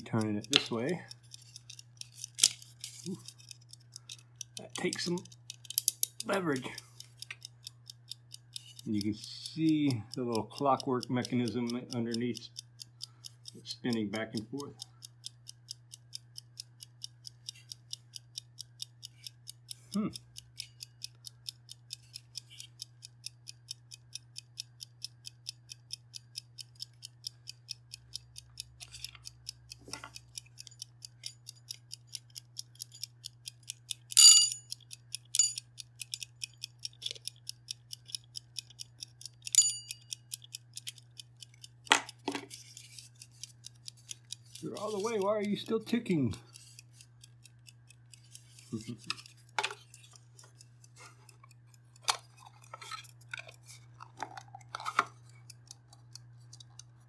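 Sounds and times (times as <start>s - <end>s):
clockwork timer ticking: 0.0s - 57.0s
low steady hum: 25.8s - 57.0s
metallic timer dings: 29.3s - 36.8s, 37.7s - 40.8s.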